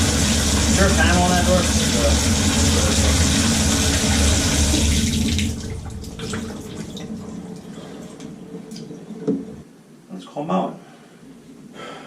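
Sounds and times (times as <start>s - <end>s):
water running from faucet: 0.0s - 8.2s.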